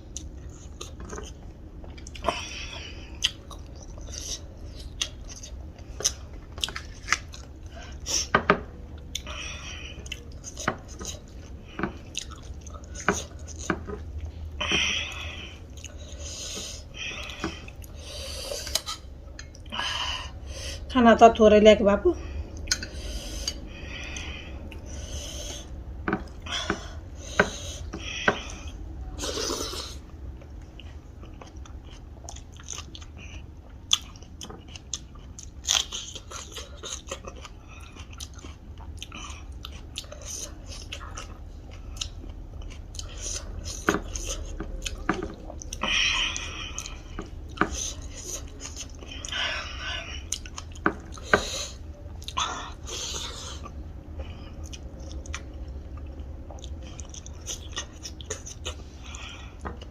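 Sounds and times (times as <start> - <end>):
person chewing food: 0.0 - 20.4, 22.3 - 59.9.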